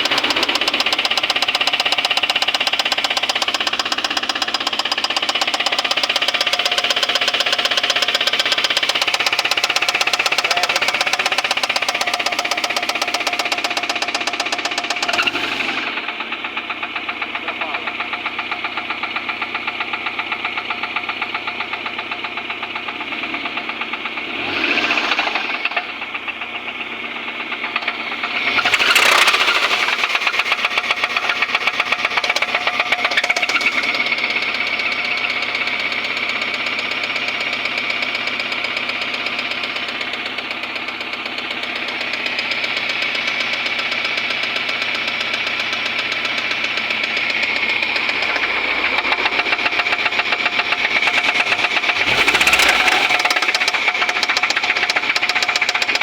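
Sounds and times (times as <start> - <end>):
knocking car engine revving: 0.0 - 56.0.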